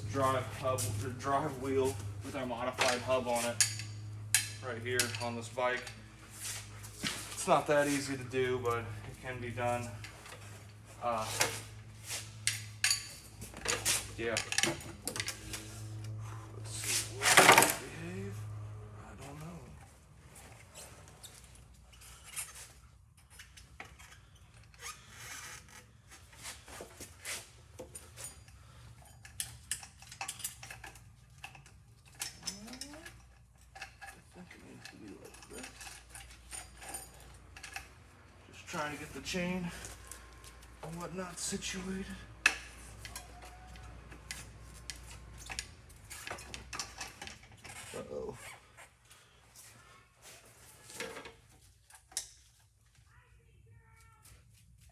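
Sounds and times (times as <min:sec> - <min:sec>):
metal clicks and clinks: 0:27.9 - 0:37.9.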